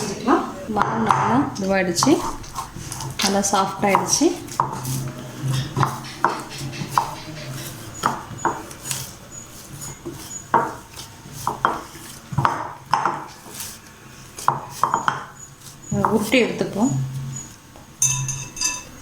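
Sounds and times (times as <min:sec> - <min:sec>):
dough being kneaded: 0:00.0 - 0:19.0
steel vessel and utensils clinking: 0:13.8 - 0:19.0.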